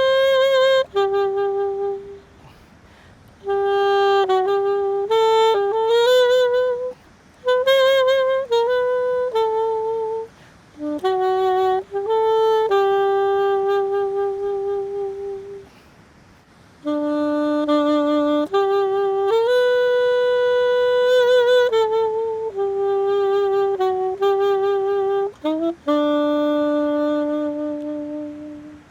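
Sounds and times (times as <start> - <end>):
solo saxophone hymn melody: 0.0 - 28.9.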